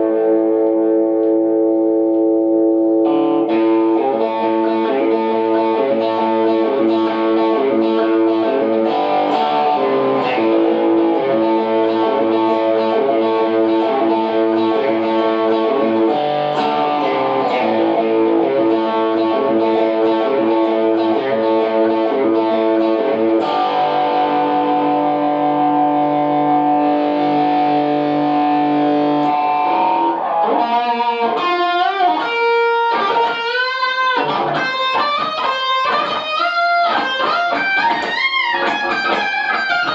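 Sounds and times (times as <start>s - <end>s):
electric guitar playing: 0.0s - 39.9s.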